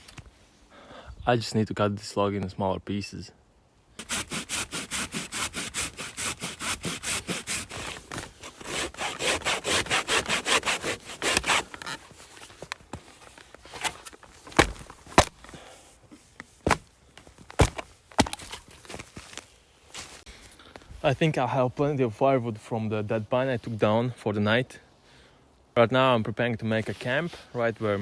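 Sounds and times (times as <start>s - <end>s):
hand saw cutting a log: 4.0s - 12.0s.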